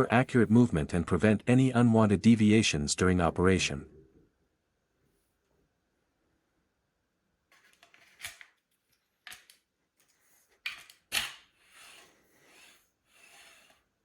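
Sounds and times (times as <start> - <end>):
short rubbing or scraping: 11.6 - 13.9.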